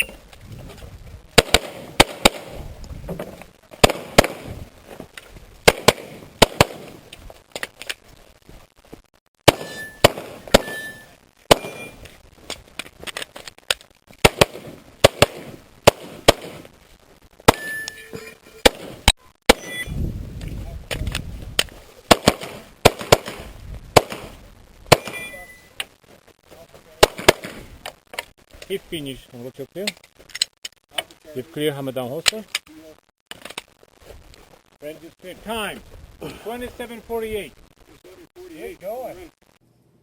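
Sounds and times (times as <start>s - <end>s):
pistol shots: 1.4s - 2.6s, 3.8s - 4.5s, 5.7s - 6.9s, 9.5s - 12.0s, 14.2s - 16.6s, 22.1s - 24.3s, 27.0s - 27.6s.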